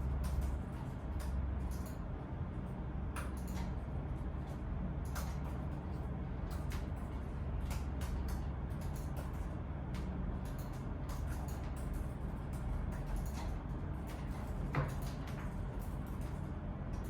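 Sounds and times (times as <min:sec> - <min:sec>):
steady low hum: 0:00.0 - 0:17.0
light clicks and taps: 0:03.1 - 0:03.8.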